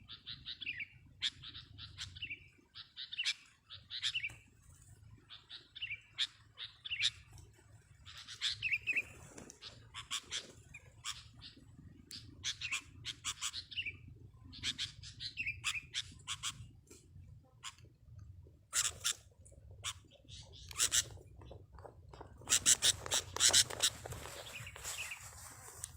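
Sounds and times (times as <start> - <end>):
birds chirping and warbling: 0.0 - 25.9.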